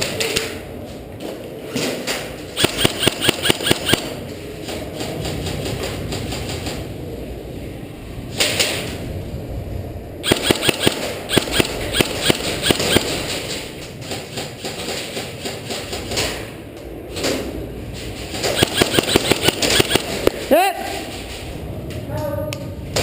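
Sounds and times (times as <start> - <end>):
airsoft gunfire: 2.6 - 4.2, 10.2 - 13.4, 18.4 - 20.4.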